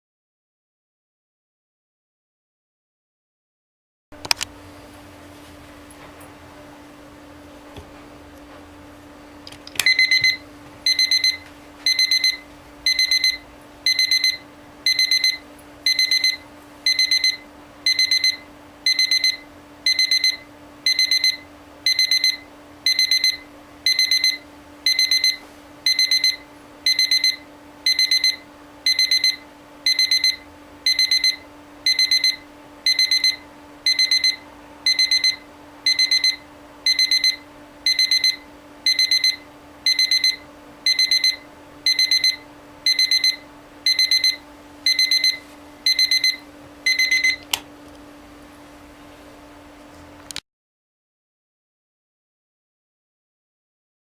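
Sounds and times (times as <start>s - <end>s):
alarm clock click: 9.7s - 47.6s
alarm clock rapid beeping: 9.9s - 47.4s.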